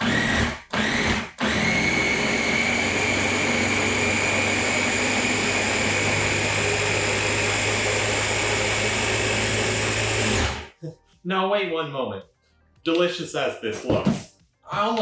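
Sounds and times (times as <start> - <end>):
blender motor whining: 0.0 - 10.7.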